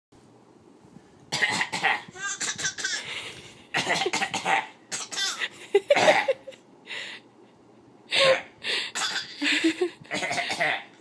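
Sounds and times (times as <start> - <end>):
baby coughing: 1.4 - 3.1, 3.8 - 6.3, 9.0 - 9.4, 10.1 - 10.9
man coughing playfully: 3.8 - 6.4, 10.1 - 10.9.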